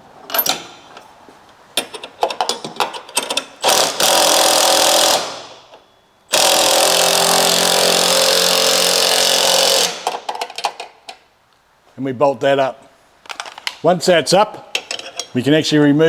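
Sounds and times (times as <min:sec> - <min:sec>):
metal clinks of nut and bolt: 0:00.3 - 0:00.8, 0:01.8 - 0:03.7, 0:14.7 - 0:15.4
power tool running: 0:03.6 - 0:05.5, 0:06.3 - 0:10.0.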